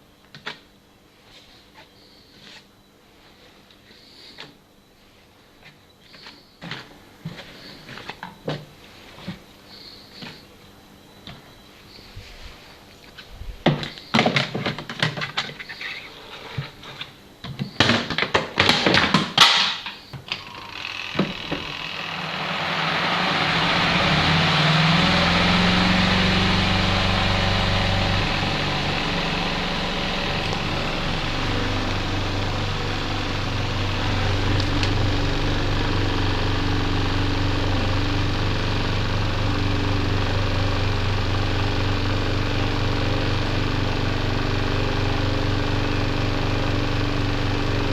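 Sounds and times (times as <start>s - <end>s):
spin dryer whirring: 20.2s - 47.9s.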